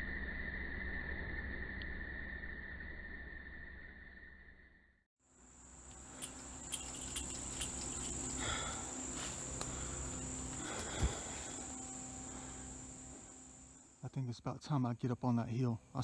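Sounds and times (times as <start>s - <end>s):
insects chirring: 5.3s - 16.0s.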